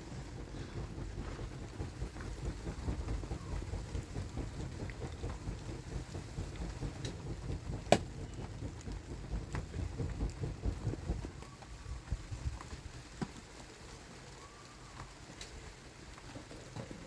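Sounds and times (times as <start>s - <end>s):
low thunder rumble: 0.0s - 13.1s
steady rain: 0.0s - 17.0s.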